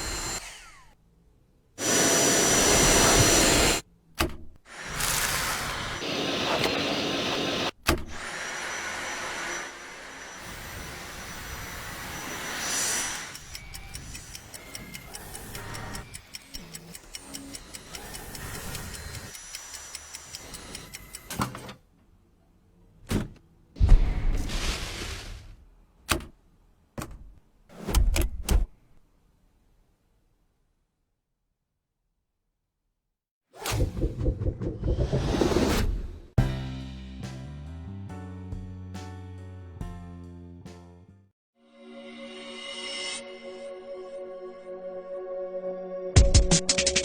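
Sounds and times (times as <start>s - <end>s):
vacuum cleaner running: 1.8s - 3.8s, 4.7s - 13.3s.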